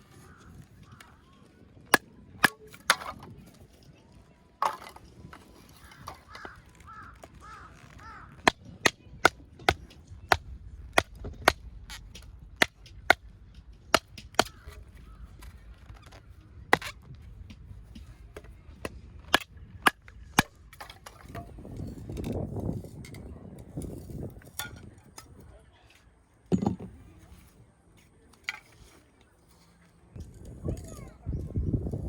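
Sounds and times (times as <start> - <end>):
burning wood popping: 4.6 - 16.4.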